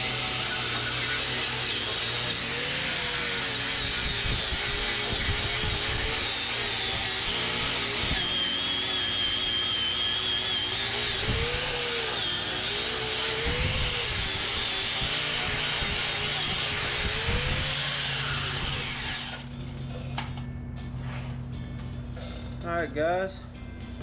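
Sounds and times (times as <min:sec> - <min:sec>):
wire brush power tool on steel: 0:00.0 - 0:19.6.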